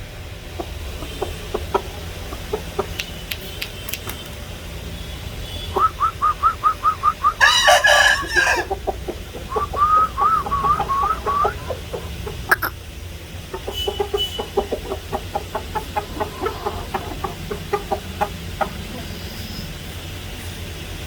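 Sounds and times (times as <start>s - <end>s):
chickens clucking: 0.0s - 4.2s, 5.7s - 19.8s
rooster crowing: 7.3s - 12.1s.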